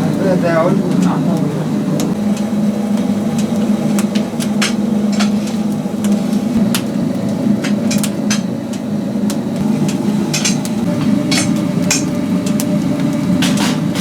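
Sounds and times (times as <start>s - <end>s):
firewood crackling and popping: 0.0s - 14.0s
low machine hum: 0.0s - 14.0s.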